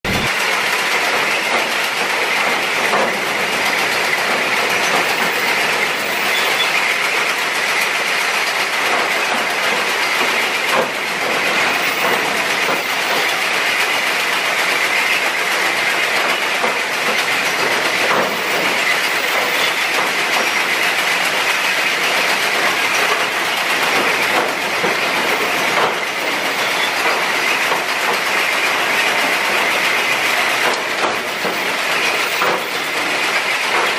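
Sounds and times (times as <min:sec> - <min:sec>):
track-laying machine din: 0:00.0 - 0:00.4.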